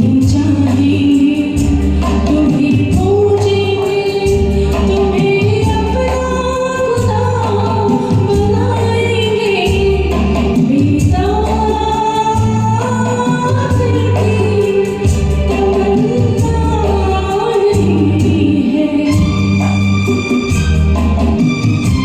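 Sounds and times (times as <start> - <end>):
woman singing: 0.0 - 20.5
karaoke backing track with bass beat: 0.0 - 22.0.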